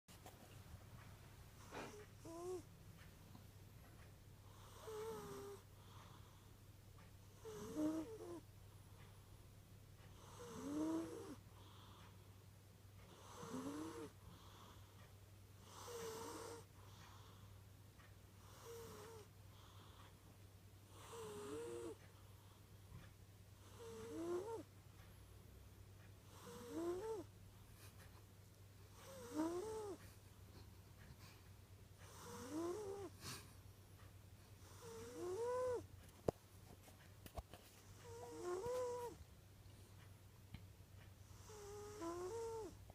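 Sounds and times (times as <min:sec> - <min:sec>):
cat snoring: 0:01.6 - 0:02.7, 0:04.5 - 0:06.5, 0:07.3 - 0:08.5, 0:10.1 - 0:12.1, 0:13.1 - 0:15.0, 0:15.6 - 0:17.5, 0:18.4 - 0:20.2, 0:20.9 - 0:24.7, 0:26.3 - 0:27.3, 0:28.9 - 0:30.0, 0:32.0 - 0:33.4, 0:34.6 - 0:35.9, 0:37.8 - 0:39.2, 0:41.2 - 0:42.8.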